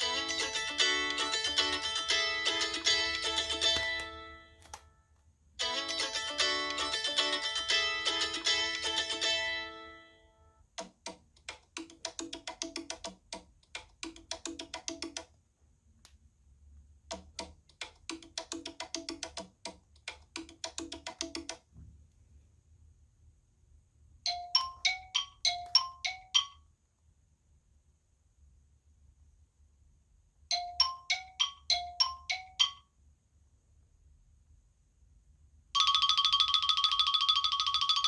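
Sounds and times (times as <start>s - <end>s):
plucked-string ringtone: 0.0s - 4.8s, 5.6s - 10.3s, 35.8s - 38.0s
wood-block-like tapping ringtone: 24.3s - 26.6s, 30.5s - 32.9s, 35.8s - 38.0s.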